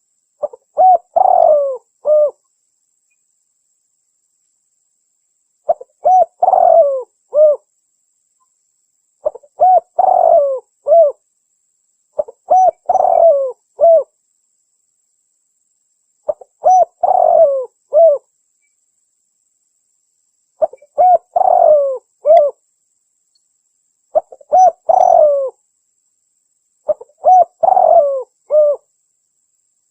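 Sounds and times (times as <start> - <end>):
dove cooing: 0.4 - 2.4, 5.7 - 7.7, 9.2 - 11.2, 12.2 - 14.1, 16.3 - 18.3, 20.6 - 22.6, 24.1 - 25.6, 26.9 - 28.9.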